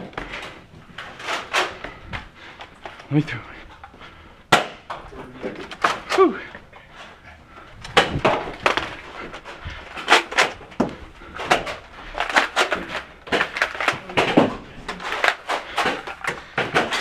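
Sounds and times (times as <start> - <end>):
foam darts hitting walls: 4.5 - 6.3, 7.9 - 9.0, 10.0 - 17.0.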